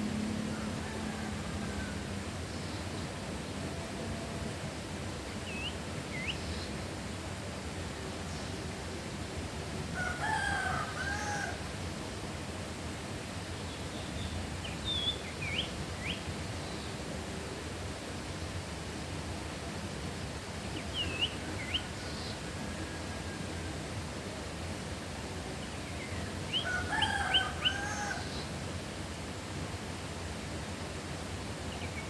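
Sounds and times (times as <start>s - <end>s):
low background noise: 0.0s - 32.0s
rooster crowing: 0.4s - 2.2s, 9.9s - 11.7s, 22.4s - 23.8s, 26.6s - 28.4s
small birds chirping: 13.6s - 17.0s, 20.6s - 22.4s, 31.4s - 32.0s.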